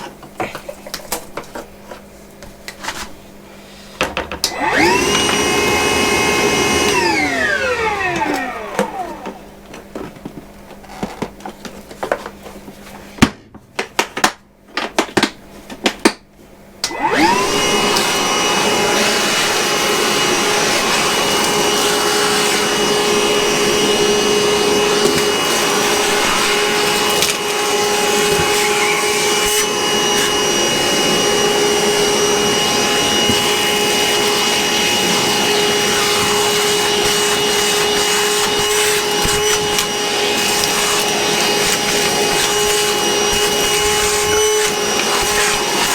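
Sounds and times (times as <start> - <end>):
shop vacuum motor whine: 4.4 - 9.5, 16.8 - 45.9.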